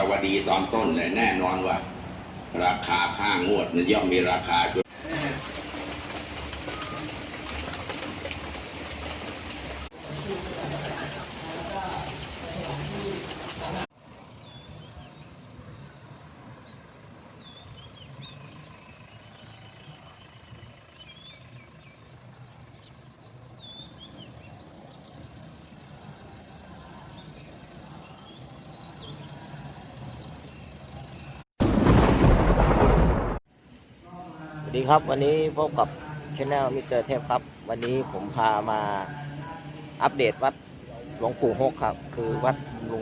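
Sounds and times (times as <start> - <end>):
small birds chirping: 10.1 - 31.4
sudden loud burst of noise: 31.6 - 33.4.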